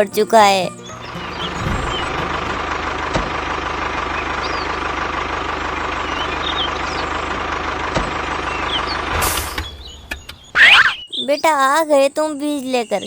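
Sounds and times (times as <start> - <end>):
small engine idling: 0.0 - 11.0
faint bird chirps: 5.8 - 7.3, 8.1 - 13.0.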